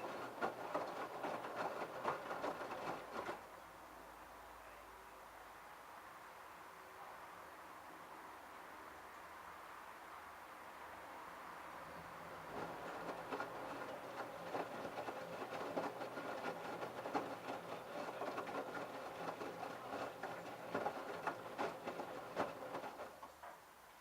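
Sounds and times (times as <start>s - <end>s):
laundry splashing and knocking in drum: 0.0s - 3.4s, 12.4s - 23.2s
washing machine water rushing: 0.0s - 3.4s, 12.4s - 23.2s.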